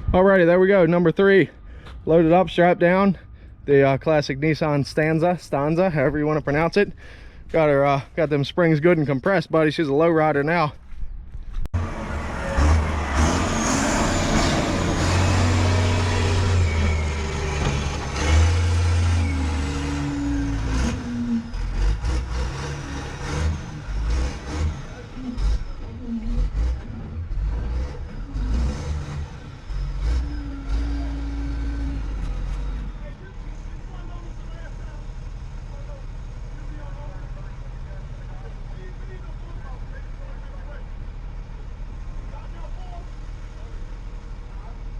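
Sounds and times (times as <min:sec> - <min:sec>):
road noise: 0:00.0 - 0:44.9
vehicle engine running: 0:11.8 - 0:44.9.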